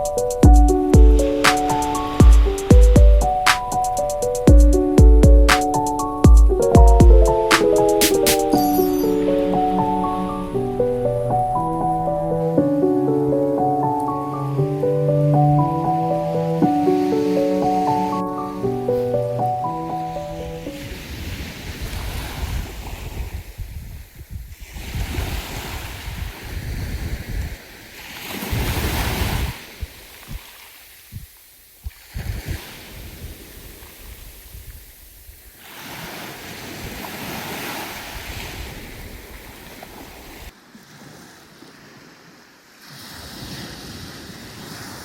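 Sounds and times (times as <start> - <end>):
sea waves washing onto beach: 0.0 - 5.0, 24.6 - 31.2, 31.8 - 45.0
wind buffeting microphone: 20.4 - 27.6, 28.5 - 30.4, 31.1 - 34.9.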